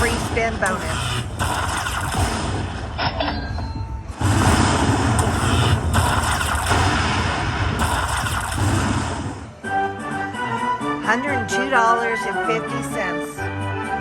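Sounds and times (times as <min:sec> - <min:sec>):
heavy low rumble: 0:00.0 - 0:09.6
game music: 0:07.8 - 0:14.0.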